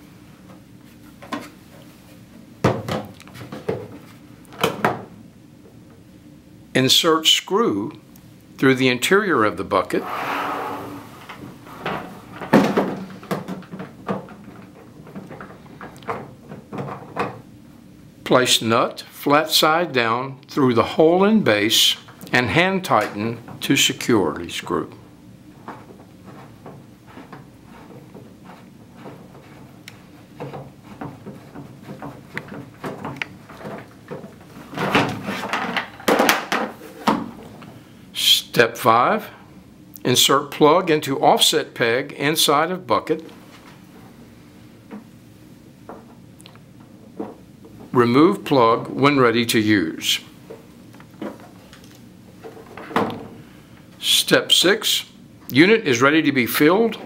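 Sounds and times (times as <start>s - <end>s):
plastic knocks and rattles: 12.4s - 17.4s, 30.4s - 37.3s.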